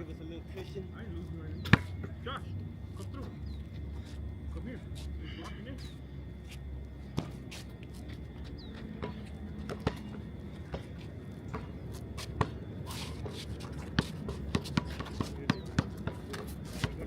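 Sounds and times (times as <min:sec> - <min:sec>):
basketball bouncing: 0:09.0 - 0:11.8, 0:13.9 - 0:17.0.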